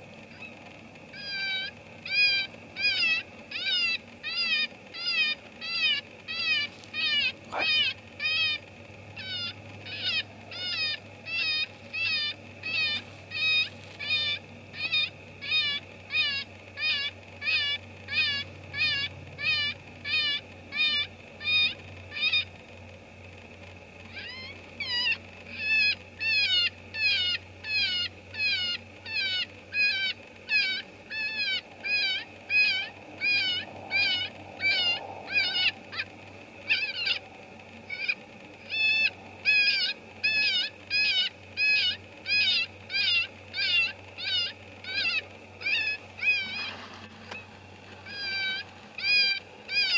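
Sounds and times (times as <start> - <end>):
electronic prey distress squeals: 24.2 - 47.4, 48.0 - 49.9.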